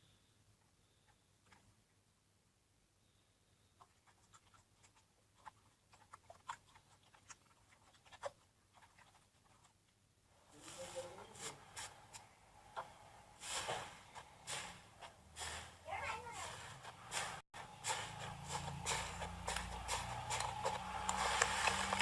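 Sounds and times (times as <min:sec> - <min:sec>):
slime squishing and rubbing: 0:03.7 - 0:09.9, 0:10.6 - 0:22.0.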